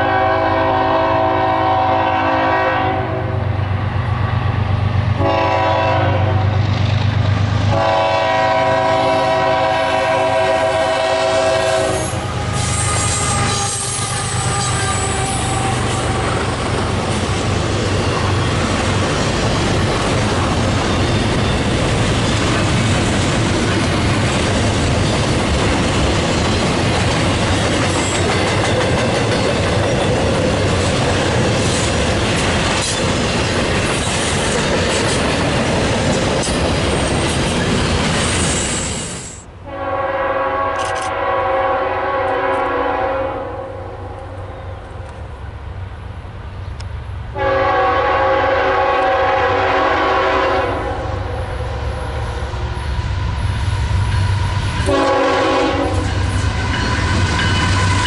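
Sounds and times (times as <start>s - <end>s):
locomotive air horn blasts: 0.0s - 3.4s, 5.2s - 6.6s, 7.7s - 16.4s, 39.6s - 44.4s, 47.3s - 51.8s, 54.8s - 56.8s
train wheels on rails: 0.0s - 43.0s, 44.1s - 58.0s.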